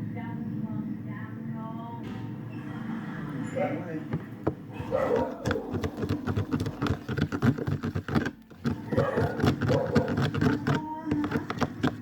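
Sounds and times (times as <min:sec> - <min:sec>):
slime stirred in plastic container: 0:04.8 - 0:12.0.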